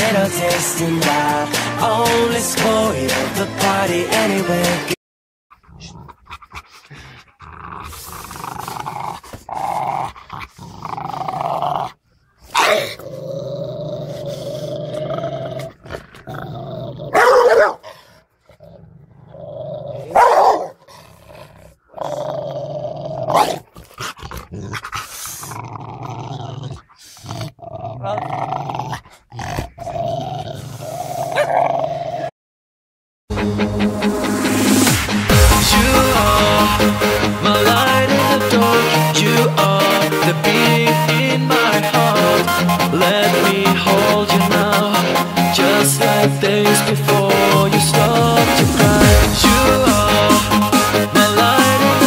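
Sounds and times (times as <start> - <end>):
dogs growling and barking: 5.5 - 32.3
loud sharp sounds: 33.8 - 38.8.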